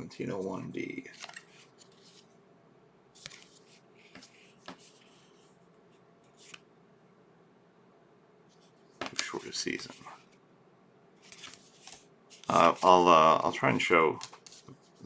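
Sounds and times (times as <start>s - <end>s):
trading cards rustling and clicking: 1.1s - 2.3s, 9.0s - 10.0s, 11.2s - 13.1s, 14.1s - 15.0s.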